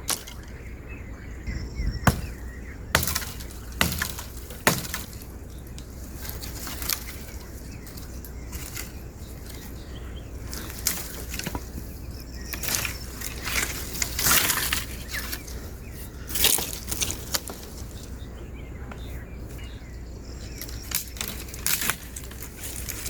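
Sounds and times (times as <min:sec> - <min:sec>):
clicks and crackling: 0:20.5 - 0:23.0.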